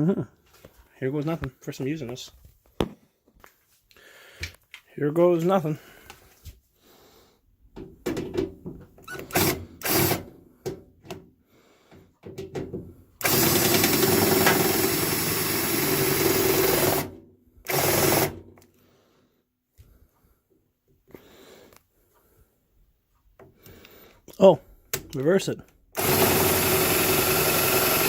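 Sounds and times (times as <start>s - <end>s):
electric drill whirring: 9.0s - 10.3s, 13.2s - 18.4s, 26.0s - 28.0s.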